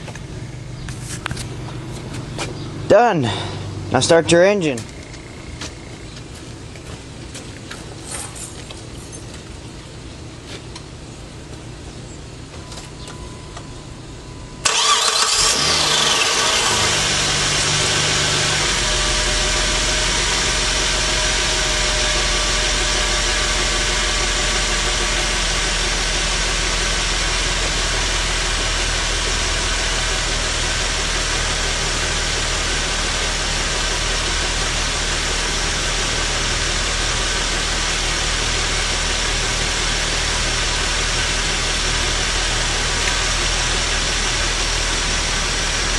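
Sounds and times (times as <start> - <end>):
car engine starting and idling: 0.0 - 45.9
brief engine whine: 12.5 - 23.4.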